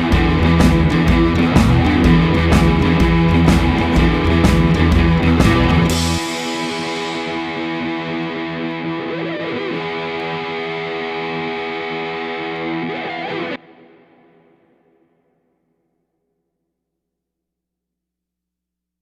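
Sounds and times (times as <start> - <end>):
distorted electric guitar chords: 0.0 - 15.0.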